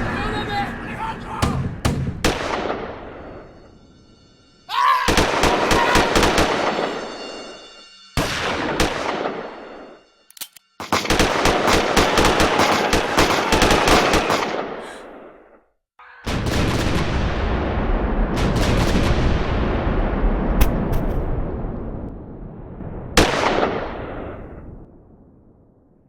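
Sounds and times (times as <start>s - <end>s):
rapid automatic gunfire: 10.8s - 14.8s.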